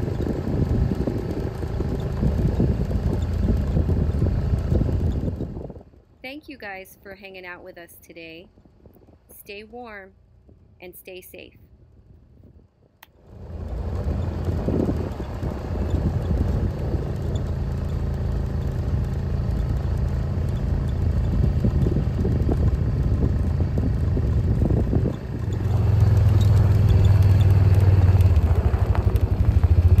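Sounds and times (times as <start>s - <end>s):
engine running: 0.0s - 6.5s, 13.0s - 30.0s.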